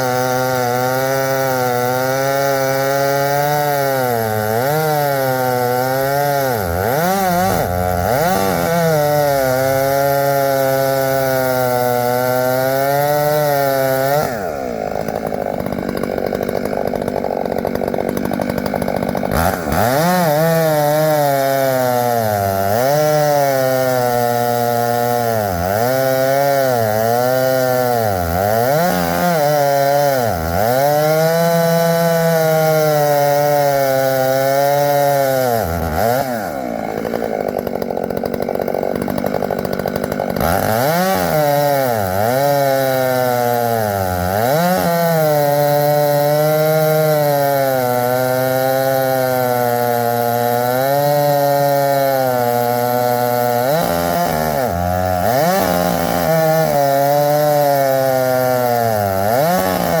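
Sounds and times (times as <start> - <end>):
chainsaw cutting wood: 0.0 - 60.0.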